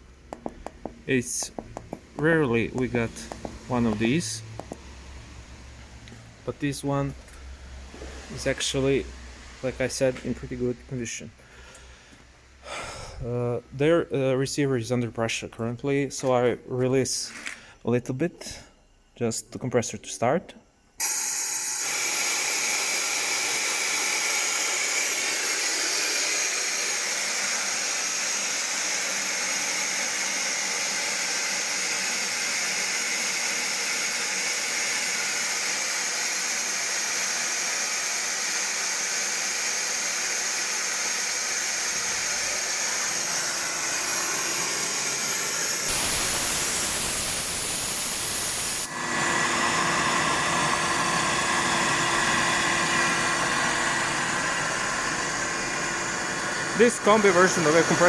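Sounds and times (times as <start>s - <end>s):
air compressor humming: 0.0s - 13.7s, 21.0s - 58.0s
compressed air hissing: 21.0s - 27.1s, 39.6s - 49.0s.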